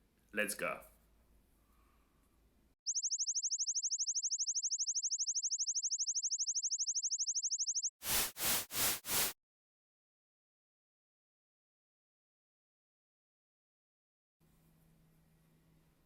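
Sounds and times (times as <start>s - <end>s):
rising synthetic chirps: 2.9s - 9.4s
short bursts of hiss: 8.0s - 9.4s.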